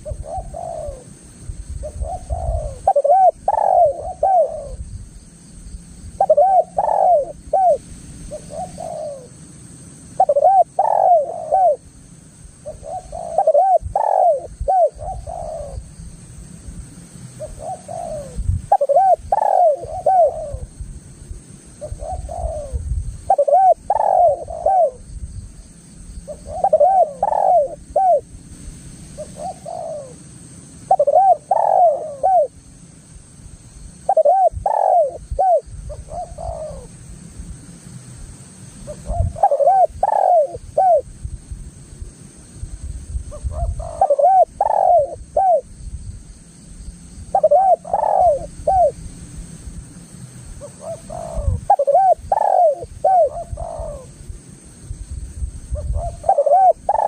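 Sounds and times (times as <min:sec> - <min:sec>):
dove cooing: 0:00.0 - 0:01.2, 0:01.8 - 0:04.8, 0:06.2 - 0:09.4, 0:10.2 - 0:11.9, 0:12.6 - 0:15.9, 0:17.4 - 0:20.8, 0:21.8 - 0:25.1, 0:26.3 - 0:28.3, 0:29.2 - 0:32.6, 0:34.0 - 0:37.0, 0:38.9 - 0:41.1, 0:43.2 - 0:45.7, 0:47.3 - 0:49.0, 0:50.6 - 0:54.2, 0:55.7 - 0:57.0.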